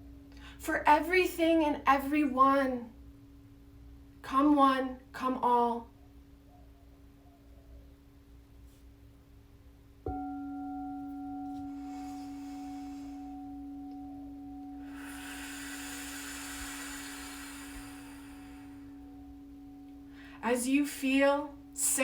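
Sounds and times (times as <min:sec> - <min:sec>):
soft rushing hiss: 0:09.9 - 0:22.0
singing bowl ringing: 0:10.1 - 0:22.0.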